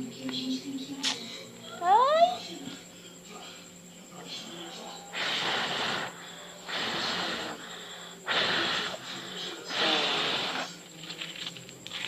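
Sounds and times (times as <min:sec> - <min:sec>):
person breathing heavily: 0:05.2 - 0:10.6.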